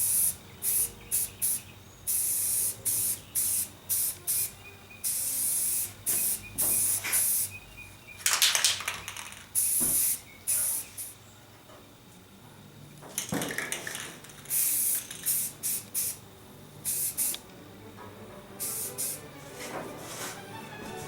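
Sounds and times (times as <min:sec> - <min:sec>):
spray paint can hissing: 0:00.0 - 0:07.5, 0:08.3 - 0:11.2, 0:13.2 - 0:16.2, 0:16.8 - 0:17.4, 0:18.6 - 0:19.3.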